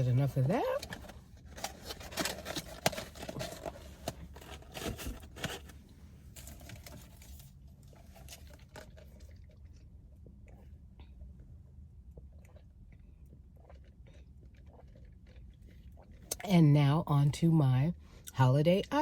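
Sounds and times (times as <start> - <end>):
food wrapping rustling: 0.7 - 9.1.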